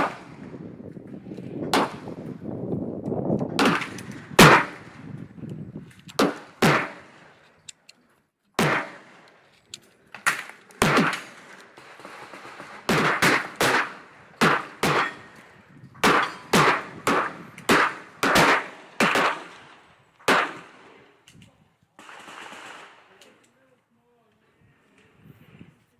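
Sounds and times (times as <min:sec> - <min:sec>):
pistol shots with echo: 0:00.0 - 0:00.7, 0:01.7 - 0:02.3, 0:03.6 - 0:05.0, 0:06.2 - 0:07.2, 0:08.6 - 0:09.2, 0:10.3 - 0:21.1.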